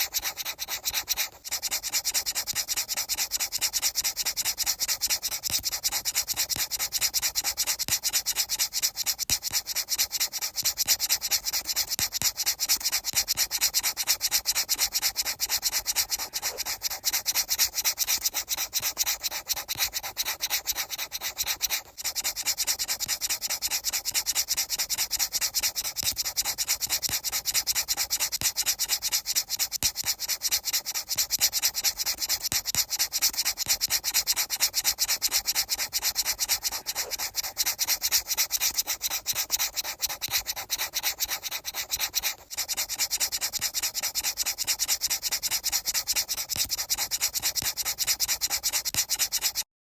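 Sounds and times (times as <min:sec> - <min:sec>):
rubbing or scraping strokes: 0:10.4 - 0:22.1, 0:28.6 - 0:49.7.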